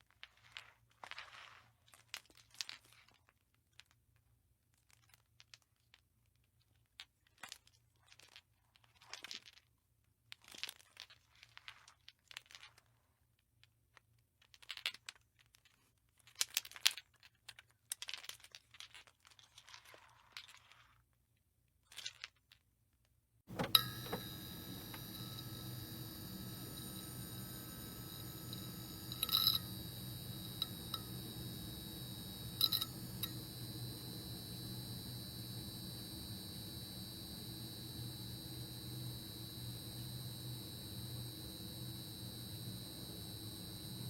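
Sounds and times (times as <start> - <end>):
small sharp clicks: 23.5 - 44.0.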